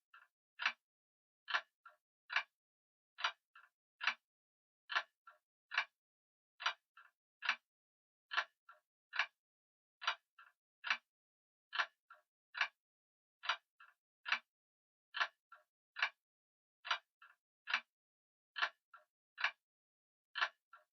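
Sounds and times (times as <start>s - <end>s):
faint clock click: 0.0s - 0.8s, 1.5s - 2.5s, 3.2s - 4.2s, 4.9s - 6.0s, 6.6s - 7.6s, 8.3s - 9.4s, 10.0s - 11.1s, 11.7s - 12.8s, 13.4s - 14.5s, 15.2s - 16.2s, 16.8s - 17.9s, 18.6s - 19.6s, 20.3s - 20.9s.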